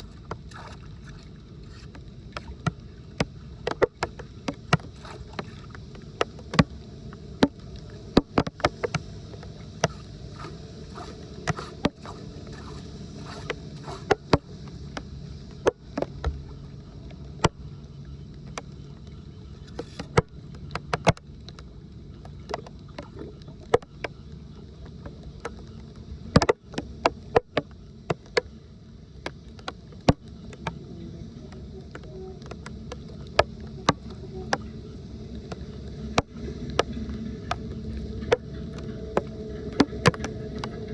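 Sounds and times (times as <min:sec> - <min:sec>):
rushing water: 0:00.0 - 0:06.8, 0:07.4 - 0:14.5
sharp knocks and clicks: 0:08.2 - 0:16.4.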